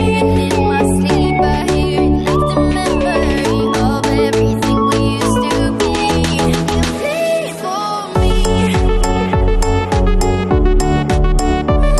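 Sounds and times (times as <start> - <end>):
deep bass drum hits: 8.2 - 11.9.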